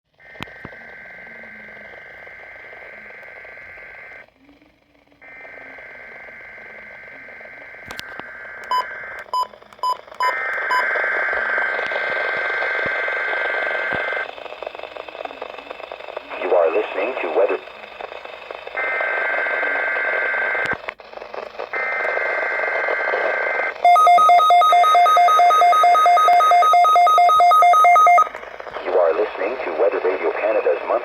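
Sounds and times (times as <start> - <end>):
radio hiss: 0.2 - 23.9, 27.7 - 31.0
short beeps: 23.8 - 28.3.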